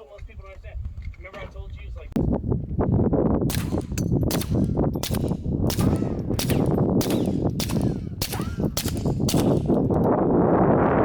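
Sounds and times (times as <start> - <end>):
steady low rumble: 0.3 - 11.0
suppressed pistol shots: 3.5 - 10.1.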